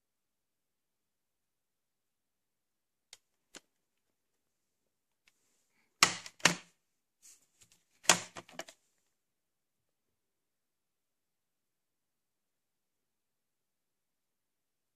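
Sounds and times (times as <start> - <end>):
plastic case clacks: 8.0 - 8.8.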